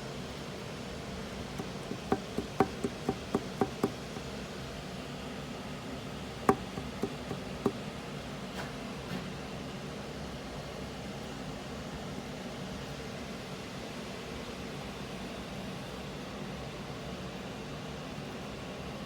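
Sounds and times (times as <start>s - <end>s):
sharp engine knocks: 1.6s - 4.2s, 6.5s - 7.8s.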